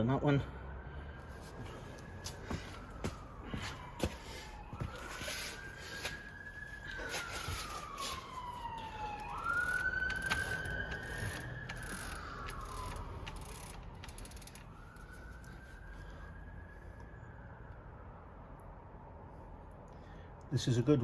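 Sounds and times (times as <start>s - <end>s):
distant siren wailing: 0.0s - 19.6s
bike chain clicking: 9.3s - 15.1s.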